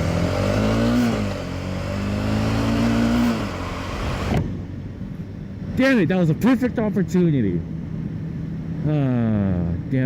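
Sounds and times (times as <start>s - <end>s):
motorcycle engine accelerating: 0.0s - 4.6s
wind noise on microphone: 3.8s - 5.1s.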